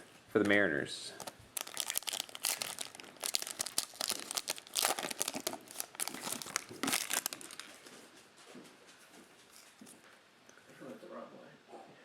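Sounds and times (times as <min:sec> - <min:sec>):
foil wrapper crinkling: 0:01.1 - 0:07.9.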